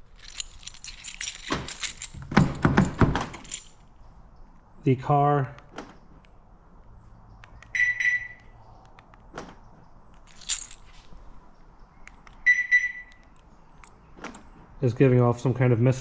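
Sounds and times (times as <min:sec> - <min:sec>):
car alarm beeps: 0:07.7 - 0:08.5, 0:12.4 - 0:13.3.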